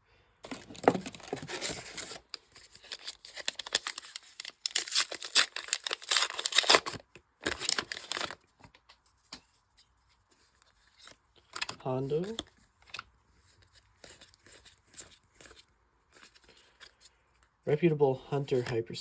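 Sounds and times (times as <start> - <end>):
foil wrapper tearing and crinkling: 0.5 - 8.4.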